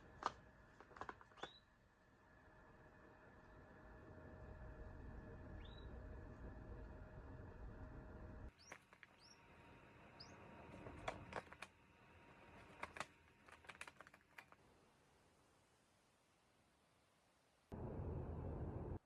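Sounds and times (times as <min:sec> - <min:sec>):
bird chick chirping: 0:05.6 - 0:06.0
clicks and taps in cage: 0:12.5 - 0:14.6.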